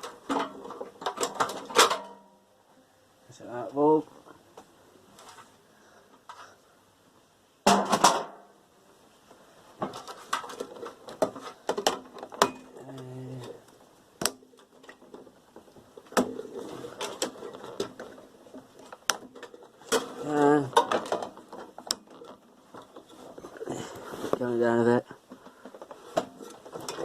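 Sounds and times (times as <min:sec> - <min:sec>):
metal parts clattering: 0:00.0 - 0:02.2, 0:16.3 - 0:24.0, 0:25.6 - 0:27.0.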